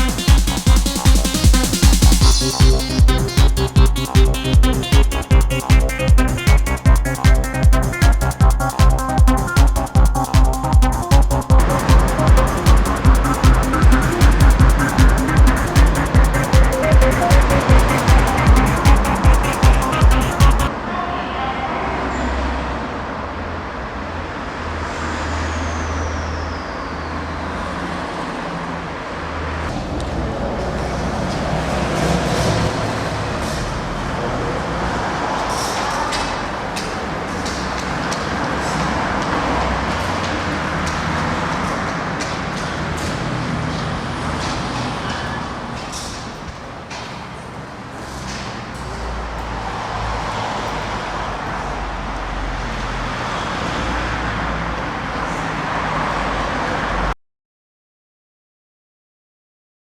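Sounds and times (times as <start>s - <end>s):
high whine falling in pitch: 0.0s - 20.7s
train rumbling on track: 0.0s - 20.8s.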